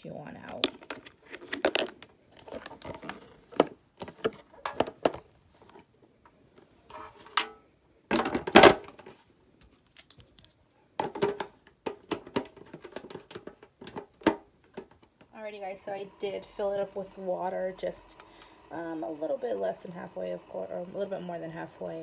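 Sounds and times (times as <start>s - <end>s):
plastic parts clattering: 0.5s - 5.8s, 6.9s - 9.2s, 10.0s - 15.1s
plastic parts clicking and knocking: 0.5s - 5.8s, 7.2s - 9.1s, 10.0s - 15.3s.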